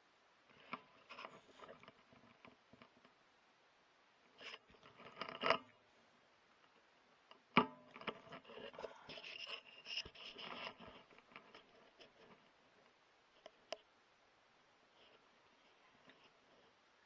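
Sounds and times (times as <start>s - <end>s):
scraping and rustling handling noises: 0.5s - 3.2s, 6.6s - 13.9s.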